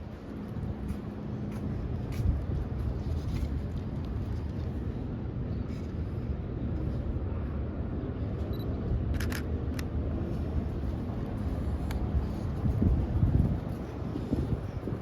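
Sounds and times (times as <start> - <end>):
wind rumble on microphone: 0.0 - 15.0
camera shutter clicking: 9.2 - 9.5.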